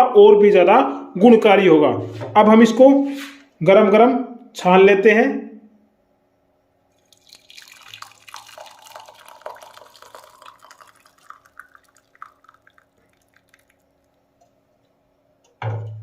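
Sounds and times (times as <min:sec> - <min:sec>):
liquid pouring through a strainer: 0:07.0 - 0:14.4.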